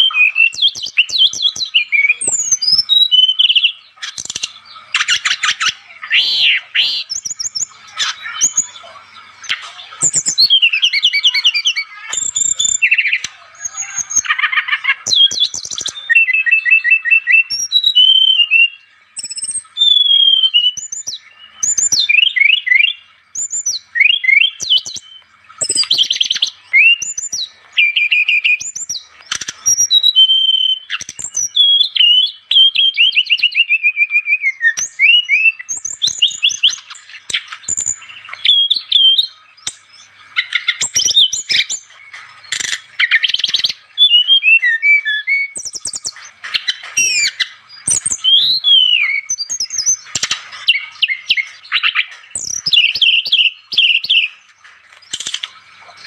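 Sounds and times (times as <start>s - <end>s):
flycatcher singing: 0.0s - 54.4s.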